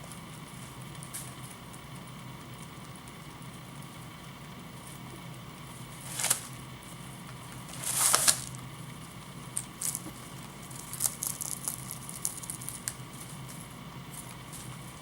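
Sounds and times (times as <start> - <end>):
rabbit chewing hay: 0.0 - 15.0
dry hay rustling: 6.0 - 6.6, 7.5 - 8.6.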